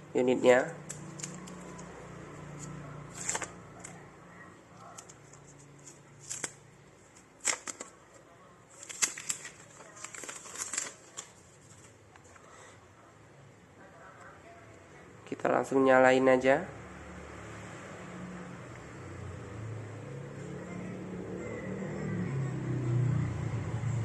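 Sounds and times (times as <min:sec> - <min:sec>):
packaging rustling and clicking: 0:00.6 - 0:01.9, 0:02.6 - 0:04.0, 0:04.8 - 0:08.0, 0:08.7 - 0:12.4.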